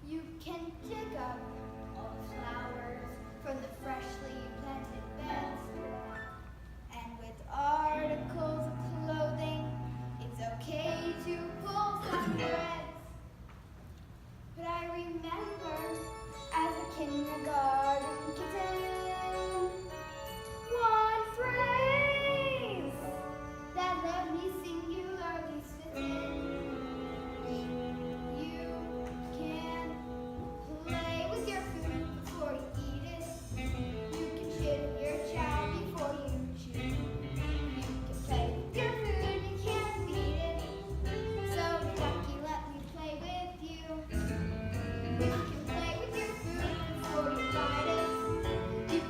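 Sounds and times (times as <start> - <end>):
children singing show tune: 0.0 - 5.9, 7.1 - 13.2, 14.6 - 44.3, 45.2 - 49.0
musical accompaniment: 0.0 - 13.6, 14.5 - 49.0
young voices singing: 38.0 - 42.2.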